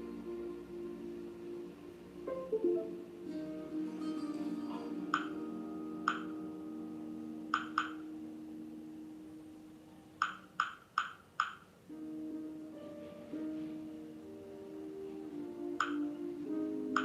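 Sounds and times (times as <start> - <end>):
soft acoustic guitar music: 0.0 - 9.6, 11.9 - 17.0
sharp clicking pings: 5.1 - 5.4, 6.0 - 6.4, 7.5 - 8.0, 10.2 - 11.7.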